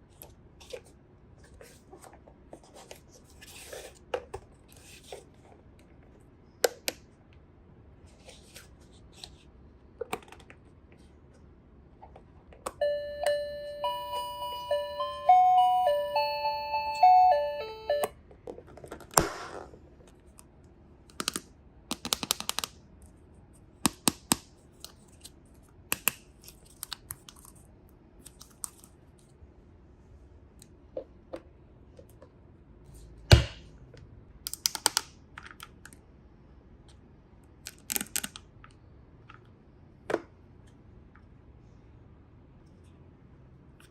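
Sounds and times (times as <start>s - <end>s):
electronic beeping tune: 12.8s - 18.1s.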